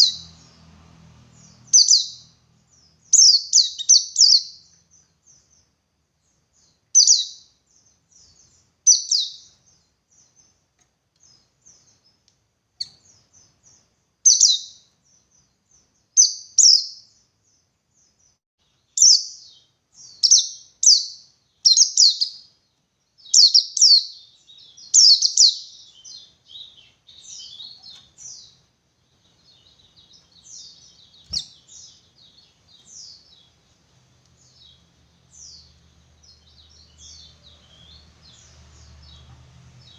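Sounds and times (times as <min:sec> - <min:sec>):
soft bird chatter: 0:00.0 - 0:39.9
bird twittering: 0:01.3 - 0:05.5, 0:06.6 - 0:07.5, 0:23.2 - 0:28.6, 0:29.3 - 0:33.6.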